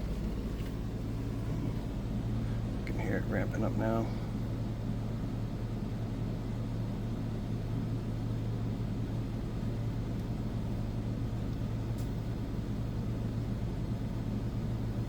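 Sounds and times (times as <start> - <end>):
generator humming: 0.0 - 5.6
air conditioner fan running: 0.0 - 15.0.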